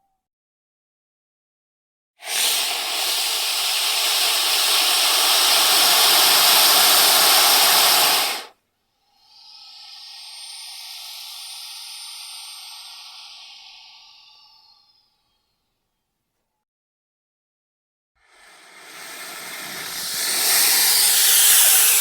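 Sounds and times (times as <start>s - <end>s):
snake hissing: 2.2s - 15.3s, 18.2s - 22.0s.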